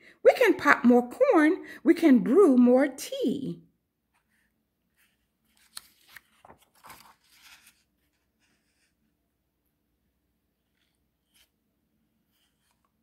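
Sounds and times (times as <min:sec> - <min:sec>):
paper page rustling: 0:04.2 - 0:09.0, 0:10.6 - 0:11.6, 0:12.3 - 0:13.0.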